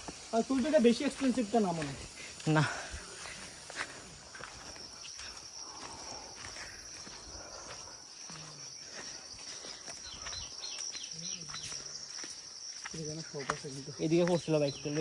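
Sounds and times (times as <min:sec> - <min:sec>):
high-pitched insect chorus: 0:00.0 - 0:15.0.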